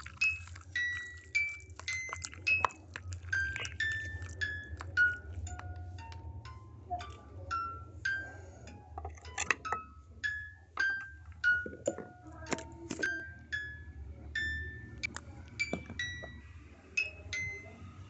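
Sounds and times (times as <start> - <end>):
low steady hum: 0.0 - 18.0
tinkling bell-like melody: 15.6 - 18.0.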